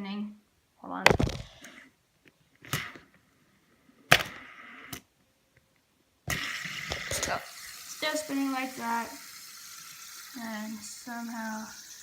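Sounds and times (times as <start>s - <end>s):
fidget spinner whirring: 6.3s - 12.0s.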